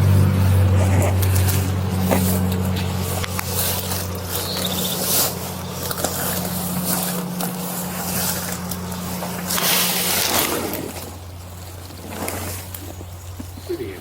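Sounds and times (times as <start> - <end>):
steady low hum: 0.0 - 14.0
microphone rubbing on clothing: 0.6 - 3.1.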